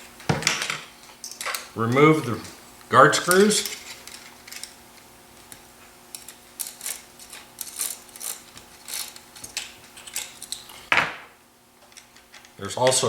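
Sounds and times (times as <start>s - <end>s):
screwdriver metal scrapes and clicks: 3.3s - 4.8s, 5.5s - 10.8s.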